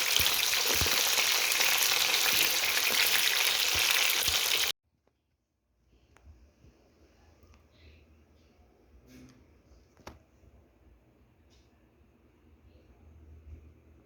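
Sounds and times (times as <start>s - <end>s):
food sizzling in hot oil: 0.0s - 4.7s.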